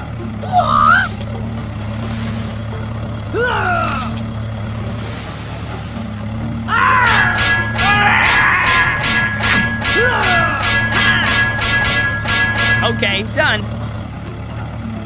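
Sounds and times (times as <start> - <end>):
cartoon engine sound effect: 0.4 - 2.3
high gliding squeaks: 0.5 - 13.2
music-like sound with strikes: 0.5 - 14.4.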